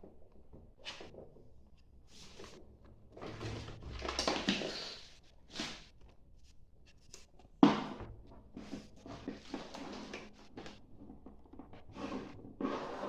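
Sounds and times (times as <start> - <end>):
plastic parts rustling and knocking: 7.4 - 12.6.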